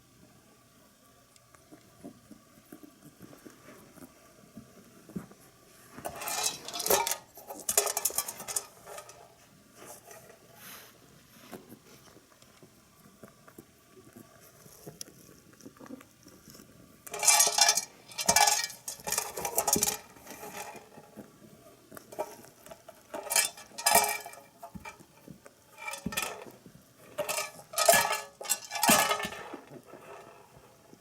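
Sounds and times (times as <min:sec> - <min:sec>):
pellets rattling in a shaker: 0:17.1 - 0:20.7.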